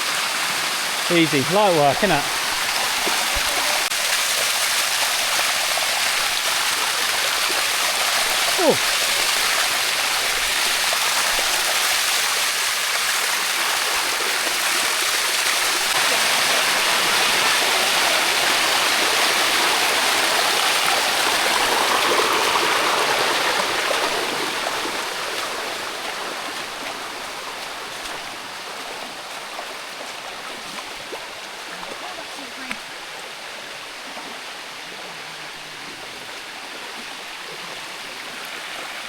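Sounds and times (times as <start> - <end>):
waterfall rushing over rock: 0.0 - 27.5.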